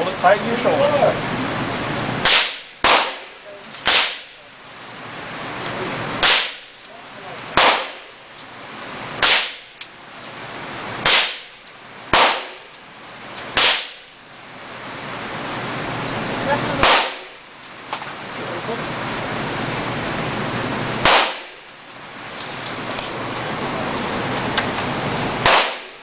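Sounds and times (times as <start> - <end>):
gunshots: 2.2 - 4.4, 6.2 - 6.7, 7.6 - 8.1, 9.2 - 9.7, 11.0 - 11.5, 12.1 - 12.7, 13.6 - 14.0, 16.8 - 17.4, 21.0 - 21.6, 25.4 - 26.0.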